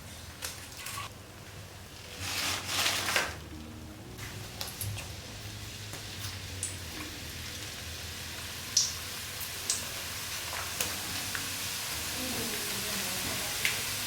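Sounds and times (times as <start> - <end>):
hot oil sizzling: 4.1 - 14.0.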